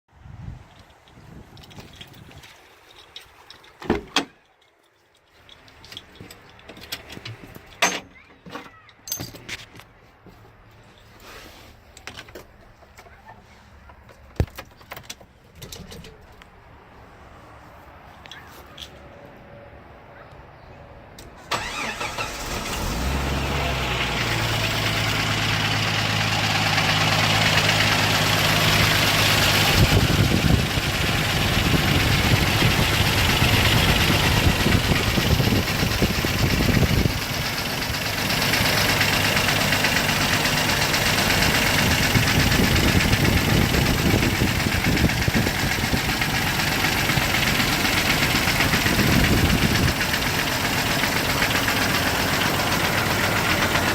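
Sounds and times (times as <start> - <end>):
car engine starting and rattling: 21.4 - 53.9.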